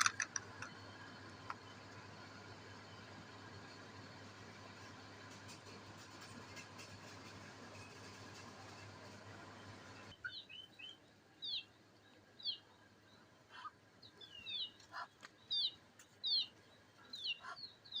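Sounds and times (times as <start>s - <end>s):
bird chirping: 10.1s - 18.0s.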